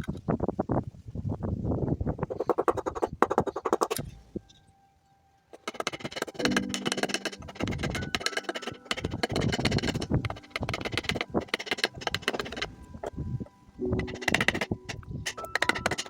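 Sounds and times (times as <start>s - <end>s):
percussive music: 5.6s - 12.6s.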